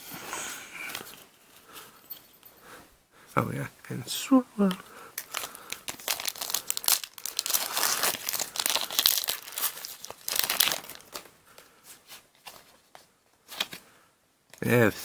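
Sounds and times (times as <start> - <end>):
foil wrapper crinkling and tearing: 5.2 - 11.3.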